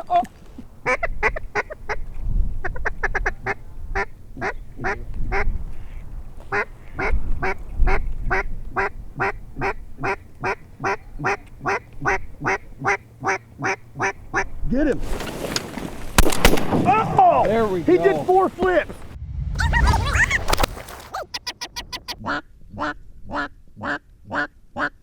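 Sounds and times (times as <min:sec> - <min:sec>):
low rumble of wind: 0:00.0 - 0:21.2, 0:21.8 - 0:25.0
duck quacking: 0:02.6 - 0:14.5, 0:21.1 - 0:25.0.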